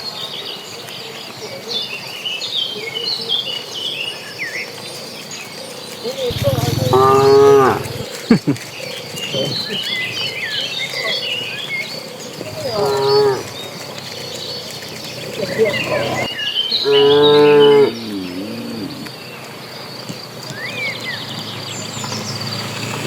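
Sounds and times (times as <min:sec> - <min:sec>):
cattle mooing: 0:06.3 - 0:08.1, 0:12.5 - 0:13.6, 0:15.2 - 0:19.0.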